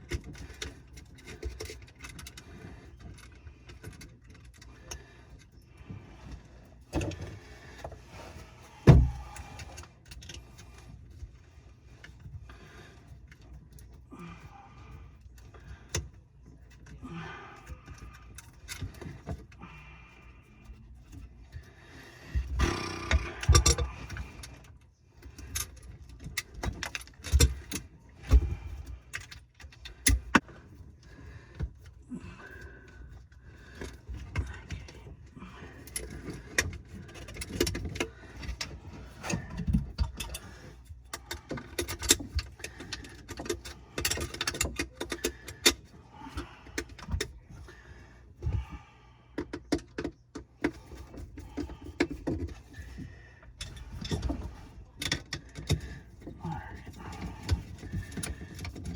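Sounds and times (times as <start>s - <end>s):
tools and parts clinking: 0.0s - 5.6s, 22.3s - 31.9s, 32.6s - 47.8s, 49.4s - 58.9s.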